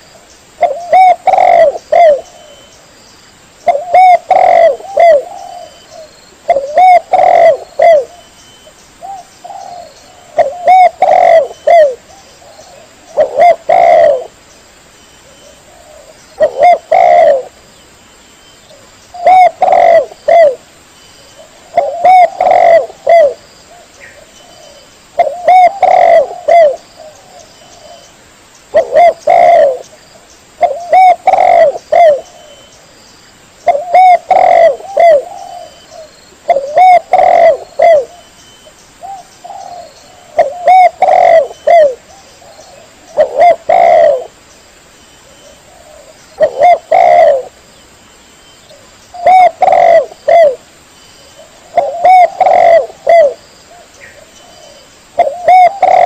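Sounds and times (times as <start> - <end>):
dove cooing: 0.6 - 2.7, 3.6 - 8.3, 9.0 - 14.4, 15.2 - 17.6, 18.7 - 20.6, 21.4 - 28.1, 28.7 - 29.9, 30.6 - 32.7, 33.6 - 38.3, 39.0 - 44.4, 45.2 - 47.6, 48.7 - 50.7, 51.4 - 56.0.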